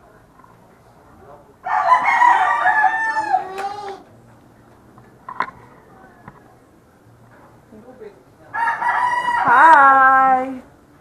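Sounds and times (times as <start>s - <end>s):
rooster crowing: 1.6s - 3.6s, 8.5s - 9.7s.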